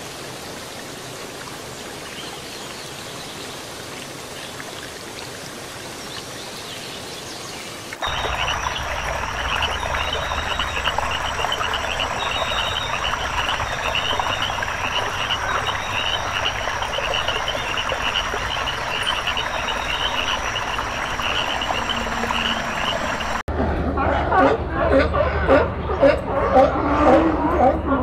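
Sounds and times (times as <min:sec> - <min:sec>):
frogs croaking in chorus: 0:08.0 - 0:23.4.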